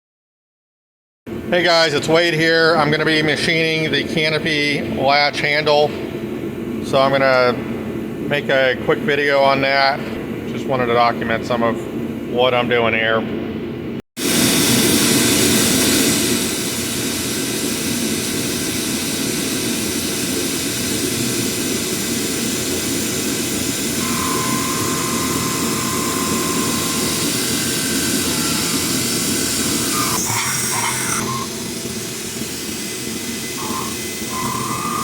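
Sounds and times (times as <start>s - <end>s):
milling machine running: 14.3s - 35.0s
whining tone: 21.6s - 35.0s.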